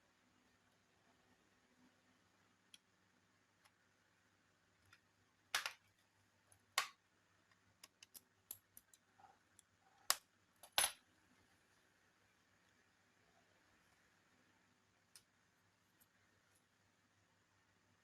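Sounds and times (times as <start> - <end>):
small parts clicking and clattering: 4.8 - 11.0.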